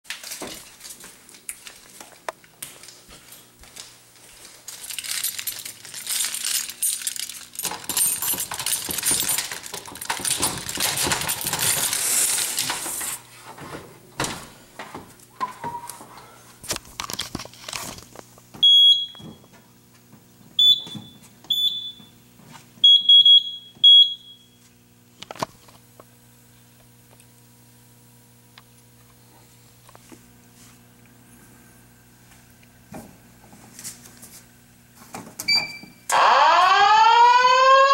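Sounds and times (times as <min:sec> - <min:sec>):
rustling handling noise: 0:00.1 - 0:13.9
short high alarm beeps: 0:20.6 - 0:22.1, 0:22.8 - 0:24.5.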